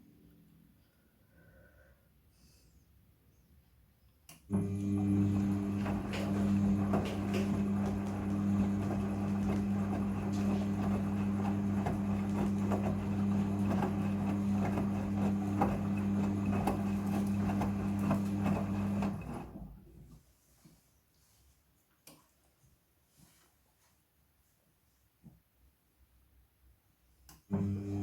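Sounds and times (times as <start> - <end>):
washing machine motor hum: 4.5 - 19.9, 27.5 - 28.0.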